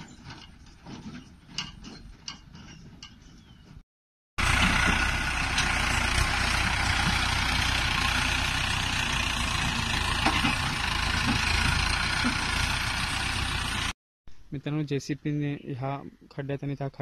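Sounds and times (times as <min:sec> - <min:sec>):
heavy diesel engine rumbling: 0:04.4 - 0:14.0.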